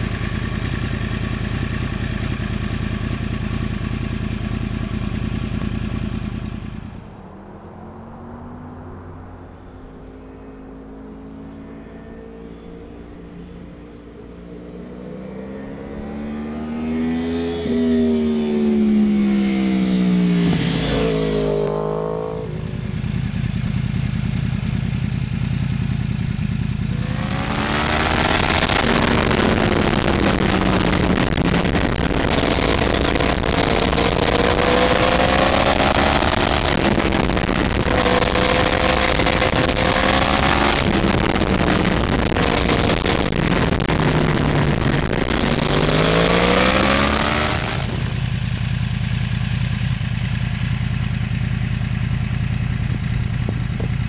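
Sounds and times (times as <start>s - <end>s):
motorcycle engine revving through upshifts: 6.0s - 23.8s, 25.7s - 54.0s
steady rushing noise: 26.7s - 49.2s.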